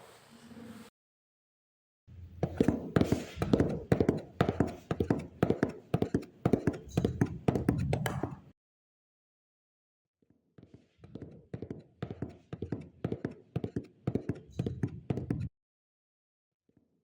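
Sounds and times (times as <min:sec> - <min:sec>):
rapid irregular taps and knocks: 0:02.4 - 0:08.5, 0:10.7 - 0:15.5.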